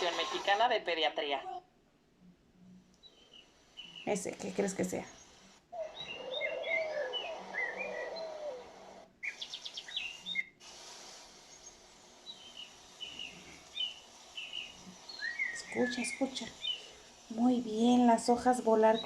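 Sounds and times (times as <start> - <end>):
birds chirping: 2.2 - 19.0
wind rustling leaves: 3.2 - 19.0.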